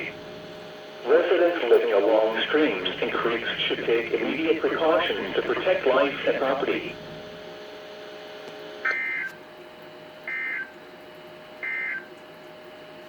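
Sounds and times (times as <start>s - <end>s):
digital data tone bursts: 8.9s - 9.3s, 10.3s - 10.7s.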